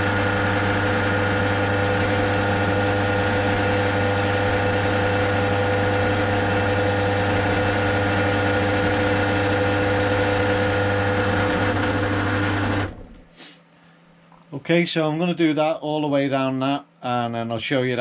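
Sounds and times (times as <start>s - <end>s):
drill motor humming: 0.0s - 13.2s.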